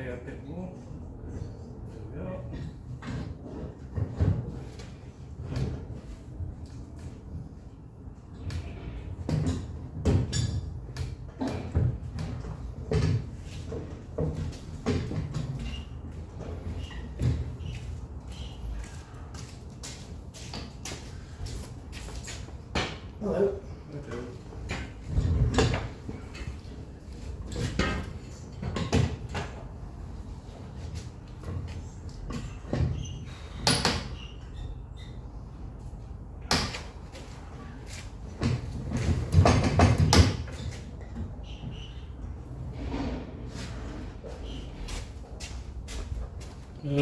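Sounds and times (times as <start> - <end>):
wooden knocks and clunks: 38.4 - 41.4.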